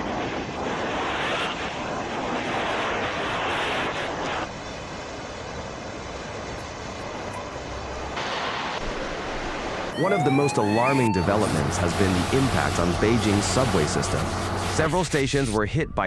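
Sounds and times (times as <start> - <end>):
rain: 4.2 - 10.2
floodwater rushing: 7.6 - 15.2.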